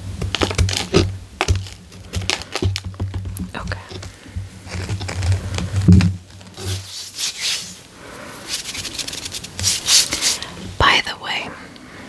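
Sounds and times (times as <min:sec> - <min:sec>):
crackly scraping of bath bomb: 0:00.2 - 0:10.5.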